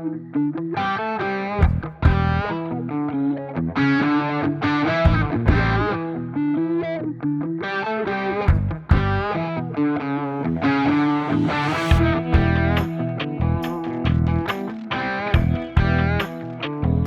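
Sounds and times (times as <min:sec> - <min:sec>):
distorted electric guitar: 0:00.0 - 0:17.0
drum hits: 0:11.8 - 0:14.8, 0:15.4 - 0:16.1.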